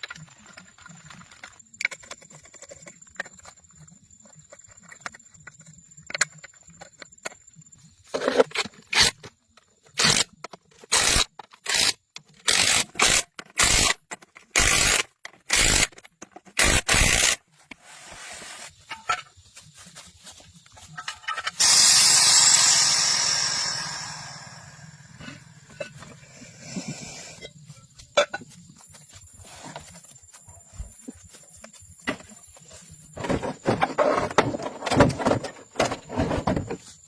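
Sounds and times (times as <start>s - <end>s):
loud hiss: 21.6s - 25.6s.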